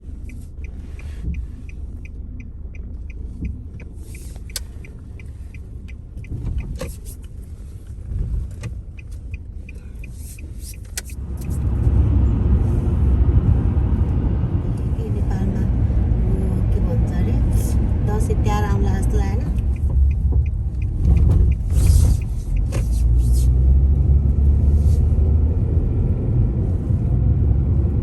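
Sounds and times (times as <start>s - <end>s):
faint regular ticking: 0.0s - 11.8s, 18.6s - 23.4s
car engine rumble: 0.0s - 28.0s.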